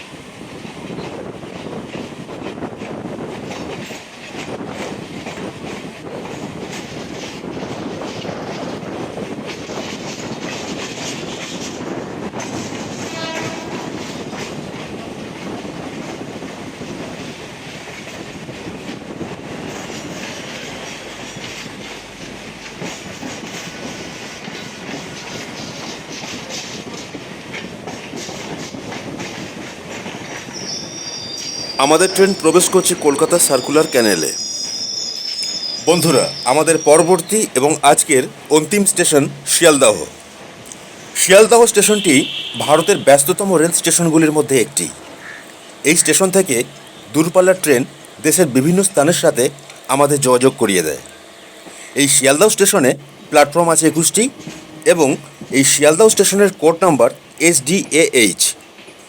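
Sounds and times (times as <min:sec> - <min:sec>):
train rumble and clickety-clack: 0:00.0 - 0:59.0
horn-like tone: 0:13.1 - 0:13.9, 0:41.7 - 0:43.4.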